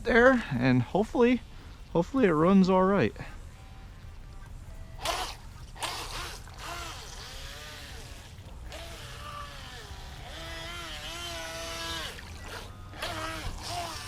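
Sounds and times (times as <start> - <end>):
electric boat motor whining: 3.5 - 14.0.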